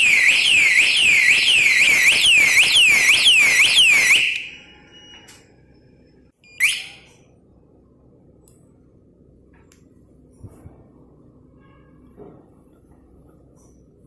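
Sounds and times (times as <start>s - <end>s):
loud rising siren chirp: 0.0s - 4.9s
motorcycle alarm siren: 0.0s - 5.3s, 6.6s - 7.1s.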